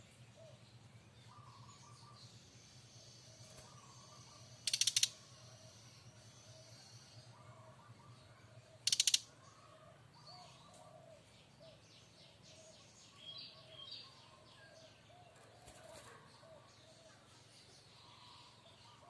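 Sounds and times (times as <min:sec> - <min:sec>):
bird rattling call: 0:03.6 - 0:05.3, 0:08.8 - 0:09.3
soft clicking rattles: 0:04.6 - 0:05.1, 0:08.9 - 0:09.2.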